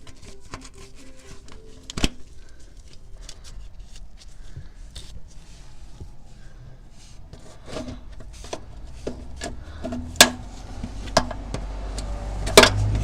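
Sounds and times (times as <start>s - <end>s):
plastic clips clicking: 0.0s - 3.6s
tool scraping: 0.0s - 11.7s.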